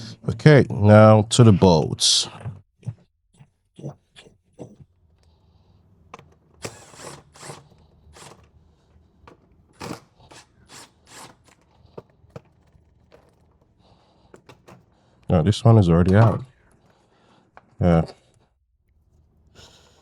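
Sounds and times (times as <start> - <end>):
tools clinking: 6.0 - 15.3
ratchet wrench clicking: 6.6 - 8.5.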